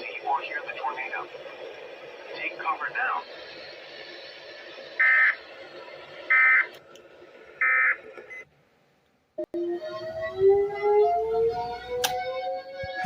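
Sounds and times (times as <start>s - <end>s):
harsh digital tone bursts: 2.3s - 6.7s
rising tone: 9.4s - 13.0s
click: 12.0s - 12.2s.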